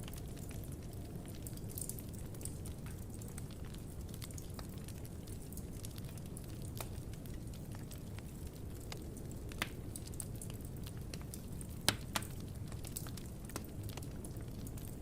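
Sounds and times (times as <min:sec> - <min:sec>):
low rumble of burning: 0:00.0 - 0:15.0
bonfire pops and snaps: 0:08.8 - 0:15.0.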